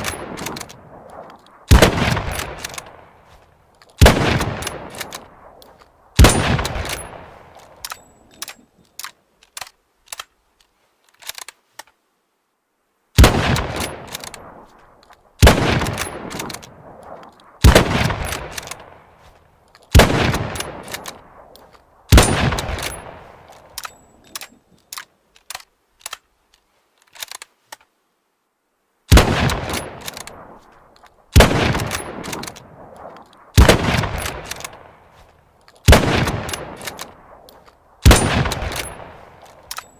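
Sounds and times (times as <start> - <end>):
rifle shots echoing: 0.0 - 3.4, 4.0 - 8.1, 13.2 - 14.8, 15.4 - 19.3, 19.9 - 24.0, 29.1 - 30.7, 31.3 - 35.2, 35.8 - 39.9
rifle bolt clicks: 0.0 - 12.0, 13.5 - 27.9, 29.2 - 39.9.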